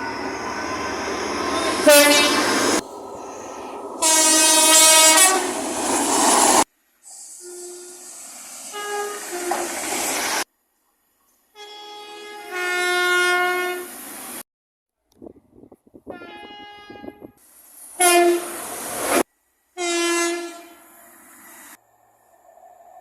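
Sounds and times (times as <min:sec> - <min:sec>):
train horn blasts: 0:01.5 - 0:02.6, 0:04.0 - 0:05.6, 0:07.4 - 0:08.1, 0:08.7 - 0:09.7, 0:11.6 - 0:13.9, 0:16.1 - 0:17.4, 0:18.0 - 0:18.6, 0:19.8 - 0:20.9.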